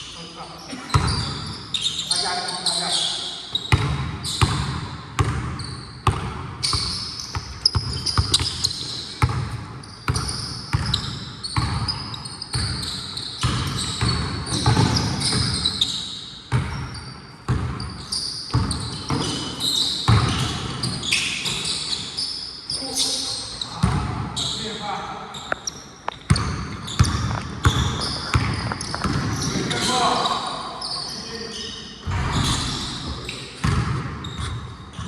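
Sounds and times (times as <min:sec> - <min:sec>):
sneakers squeaking on court: 0:00.0 - 0:35.0
basketball bouncing on gym floor: 0:00.7 - 0:01.6, 0:03.5 - 0:15.9, 0:16.5 - 0:21.0, 0:23.7 - 0:24.4, 0:25.4 - 0:29.9, 0:32.0 - 0:35.0.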